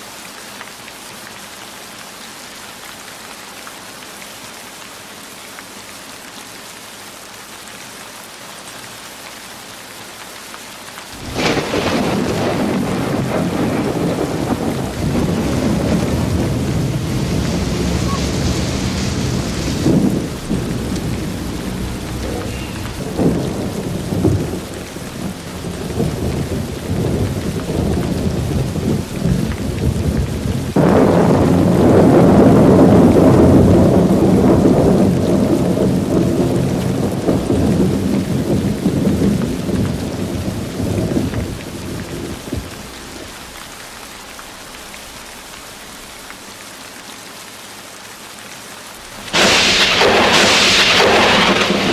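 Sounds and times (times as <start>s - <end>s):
rain falling: 0.0s - 51.9s
loud thunderclap: 11.2s - 43.6s, 49.2s - 51.9s
rolling thunder: 11.2s - 43.6s, 49.2s - 51.9s.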